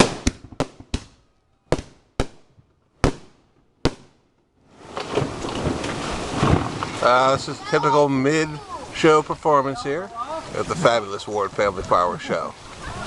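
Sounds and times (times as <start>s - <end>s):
firework bangs: 0.0s - 7.5s.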